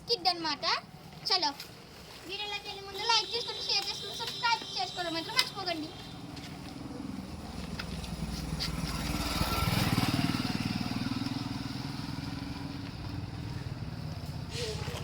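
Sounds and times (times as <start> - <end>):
motorcycle engine passing: 5.9 - 15.0.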